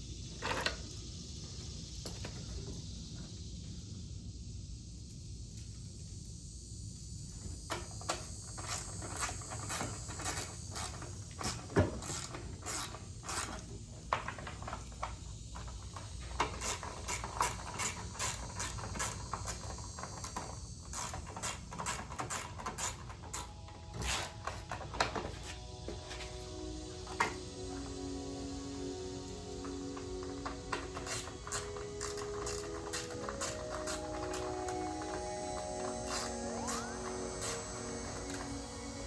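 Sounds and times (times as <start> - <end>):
ratchet wrench clicking: 7.7 - 13.7, 16.4 - 24.3, 30.8 - 35.0, 36.0 - 38.5.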